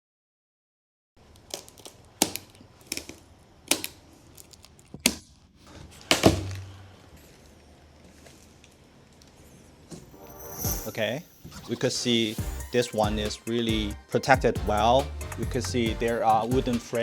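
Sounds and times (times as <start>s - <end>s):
cardboard box snaps and knocks: 6.0s - 6.8s.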